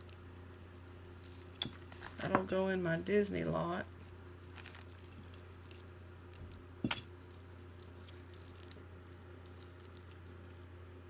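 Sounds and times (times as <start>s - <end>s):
metal jewelry jingling: 0.0s - 2.9s, 3.9s - 8.8s, 9.5s - 10.7s.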